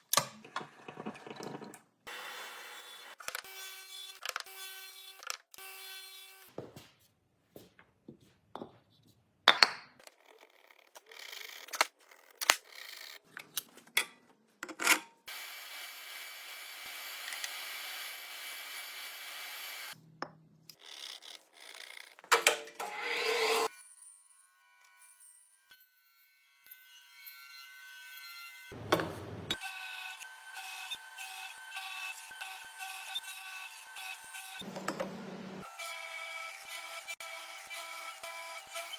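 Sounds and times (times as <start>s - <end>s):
power tool noise: 28.6s - 38.9s
wooden knocks and clatters: 28.8s - 29.6s.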